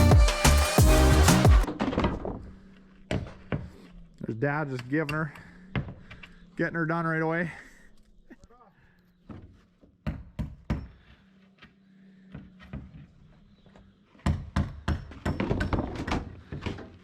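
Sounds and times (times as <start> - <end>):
sharp knocks and thuds: 1.6 - 3.9, 5.6 - 6.3, 9.2 - 11.1, 12.3 - 17.0.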